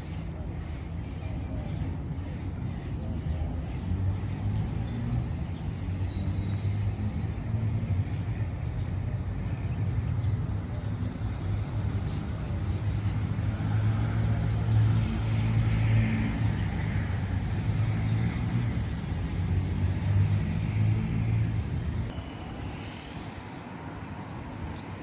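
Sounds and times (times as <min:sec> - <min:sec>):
street traffic noise: 0:00.0 - 0:25.0
vehicle engine running: 0:05.6 - 0:22.1.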